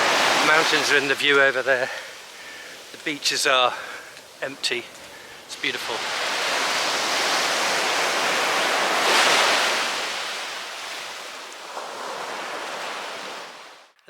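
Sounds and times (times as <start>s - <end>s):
sea waves washing onto beach: 0.0s - 13.9s.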